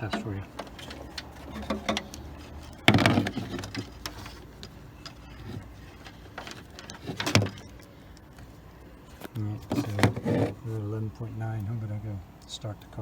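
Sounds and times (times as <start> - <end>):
handling clicks and knocks: 0.0 - 8.5, 9.1 - 10.6.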